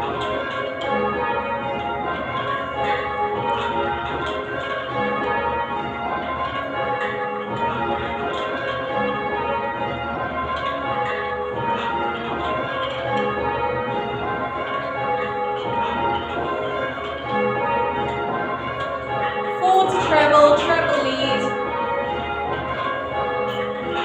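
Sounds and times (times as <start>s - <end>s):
church bells ringing: 0.0s - 24.0s.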